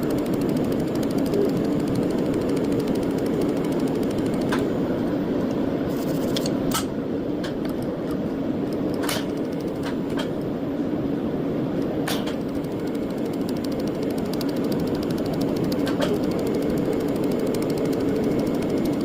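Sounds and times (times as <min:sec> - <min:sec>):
sharp laser clicks: 0:00.0 - 0:04.7, 0:12.1 - 0:19.0
welding machine humming: 0:00.0 - 0:05.1, 0:12.1 - 0:19.0.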